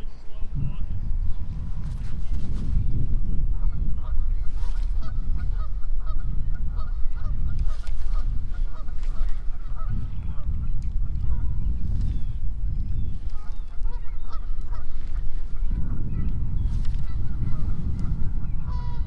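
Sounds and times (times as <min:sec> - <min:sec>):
steady low rumble: 0:00.0 - 0:19.0
geese honking: 0:03.6 - 0:10.5, 0:13.3 - 0:16.1, 0:17.0 - 0:19.0.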